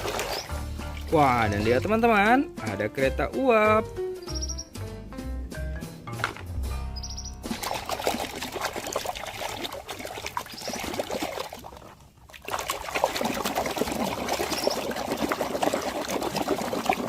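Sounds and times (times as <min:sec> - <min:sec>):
small splashes: 0:00.0 - 0:01.8, 0:07.5 - 0:17.0
water pouring and trickling: 0:00.0 - 0:02.9, 0:07.4 - 0:17.0.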